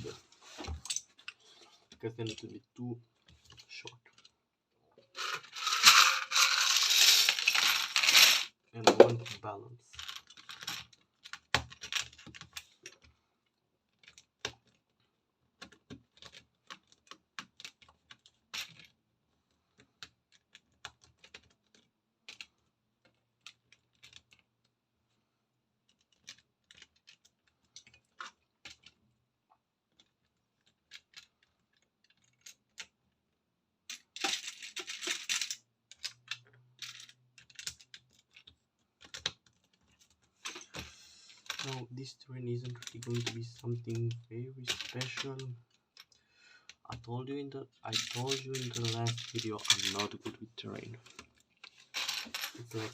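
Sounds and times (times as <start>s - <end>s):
rummaging through loose bricks: 5.1s - 9.2s
plastic bricks clicking and rattling: 5.1s - 13.1s, 13.9s - 19.0s, 19.8s - 24.5s, 25.9s - 29.2s, 29.9s - 33.1s, 33.9s - 40.8s, 42.6s - 47.1s, 47.9s - 52.9s.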